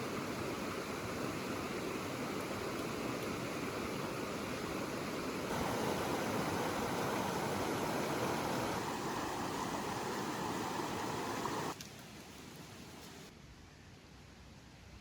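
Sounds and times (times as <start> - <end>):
running water: 0.0 - 11.8.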